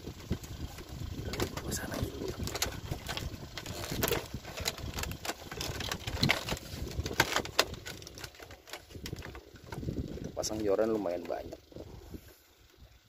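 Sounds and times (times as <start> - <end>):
sharp clicks and knocks: 0.2 - 10.2.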